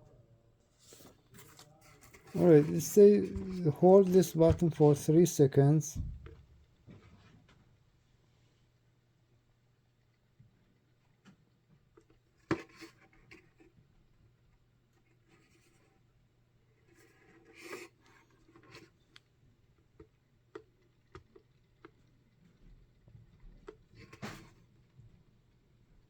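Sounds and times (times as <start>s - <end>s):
plastic clock clicking and rubbing: 16.8s - 19.0s.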